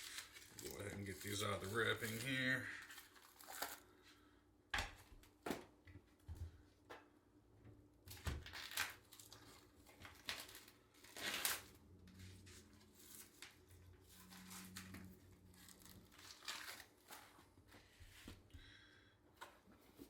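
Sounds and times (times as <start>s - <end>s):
plastic packaging crinkling and tearing: 0.0s - 4.0s, 8.1s - 17.7s.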